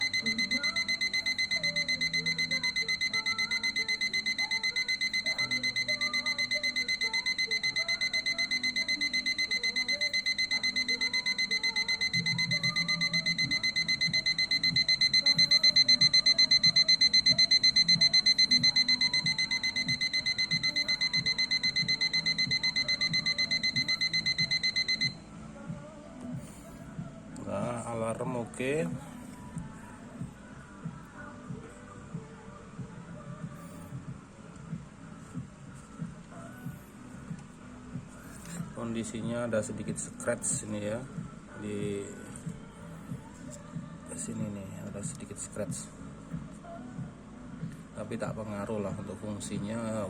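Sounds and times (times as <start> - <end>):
alarm clock beeping: 0.0 - 25.2.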